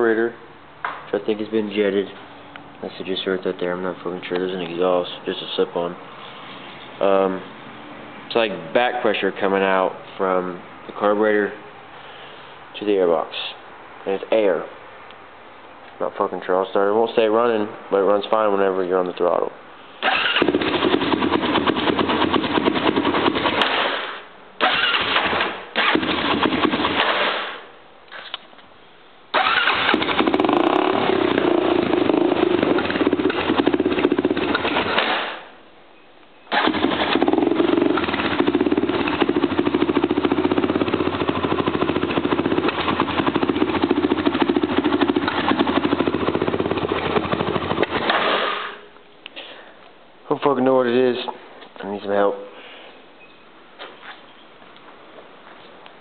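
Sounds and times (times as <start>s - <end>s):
atv engine starting and stalling: 20.0s - 27.6s, 29.3s - 35.5s, 36.5s - 48.9s.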